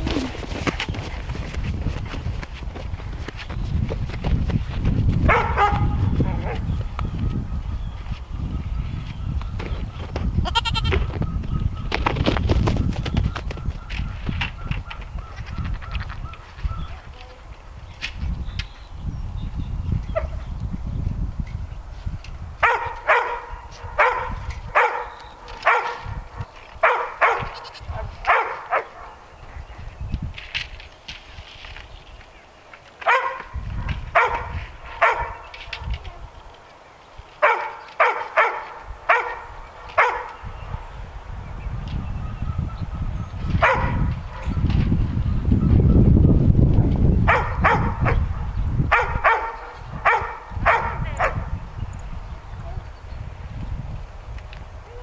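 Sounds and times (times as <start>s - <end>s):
wind on microphone: 0.0s - 32.4s, 33.1s - 55.0s
farm animals calling: 10.4s - 11.4s.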